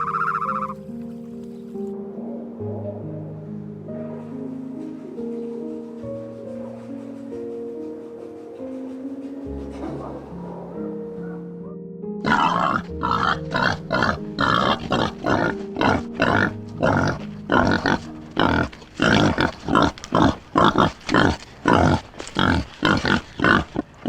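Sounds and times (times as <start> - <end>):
animal harsh calls: 0.0 - 0.8, 12.2 - 24.0
music: 0.0 - 24.0.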